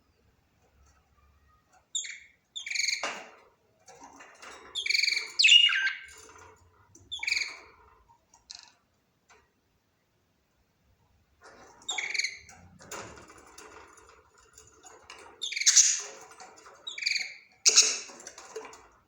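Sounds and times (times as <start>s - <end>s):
budgerigar chirping: 4.8s - 6.1s, 15.4s - 16.0s.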